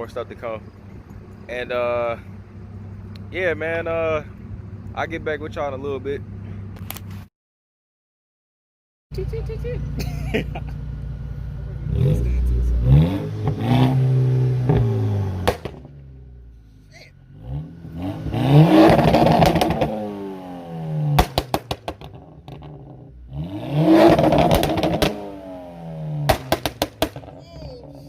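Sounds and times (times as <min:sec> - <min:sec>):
car engine revving: 0:09.4 - 0:28.0
exhaust popping: 0:11.8 - 0:16.4, 0:17.4 - 0:28.0.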